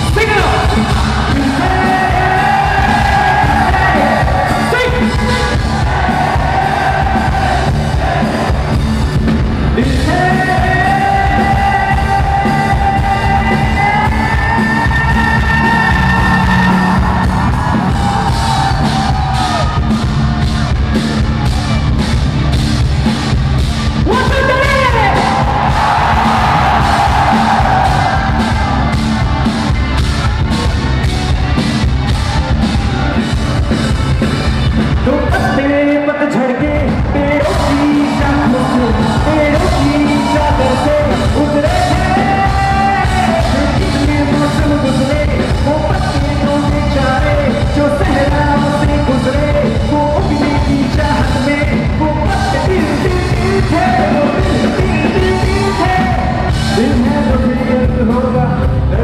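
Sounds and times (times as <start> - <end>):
crowd yelling along: 0.0 - 57.8
live song through loud pa: 0.0 - 59.0
person singing: 9.8 - 17.2, 35.1 - 59.0.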